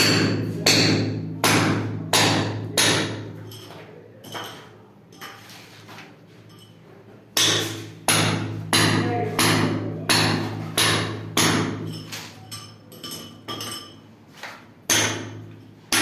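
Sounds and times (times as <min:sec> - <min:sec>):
hammer blows ringing: 0:00.0 - 0:03.6, 0:07.4 - 0:12.2.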